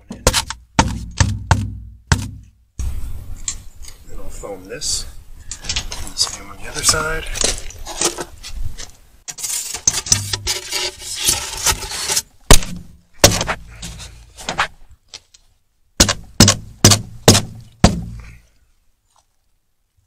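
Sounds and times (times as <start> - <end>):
sharp knocks: 0.0 - 2.5, 12.5 - 13.6, 16.0 - 18.3.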